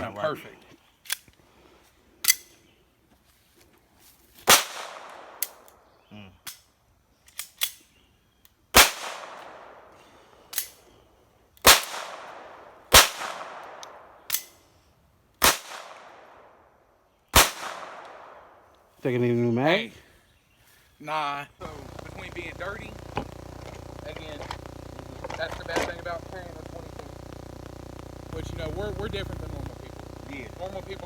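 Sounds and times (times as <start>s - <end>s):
faint cracks and clicks: 21.6s - 31.0s.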